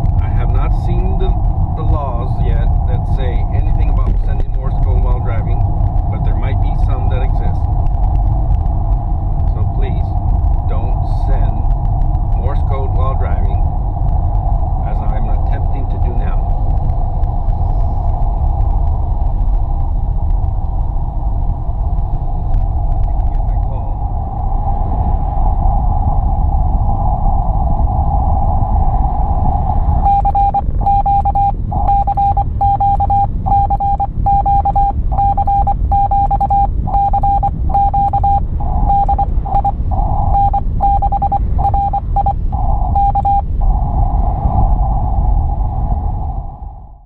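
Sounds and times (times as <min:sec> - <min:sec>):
car rumble on road: 0:00.0 - 0:47.0
radio hiss: 0:00.2 - 0:07.7, 0:09.5 - 0:11.7, 0:12.4 - 0:13.6, 0:14.8 - 0:16.5, 0:22.9 - 0:24.0
morse code tone: 0:30.0 - 0:43.5.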